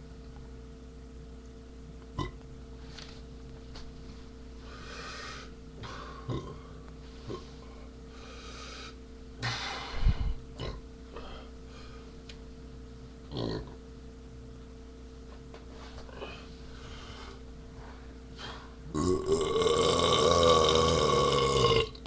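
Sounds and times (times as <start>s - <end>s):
steady low hum: 0.0s - 22.0s
man burping: 2.2s - 2.4s, 5.8s - 6.7s, 10.6s - 10.9s, 13.3s - 13.8s, 18.9s - 22.0s.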